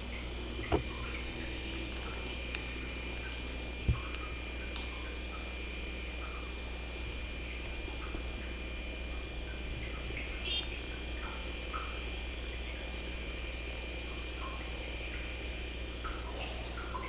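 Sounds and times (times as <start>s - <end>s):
thin high whine: 0.0s - 12.4s
low electrical hum and hiss: 0.0s - 17.0s.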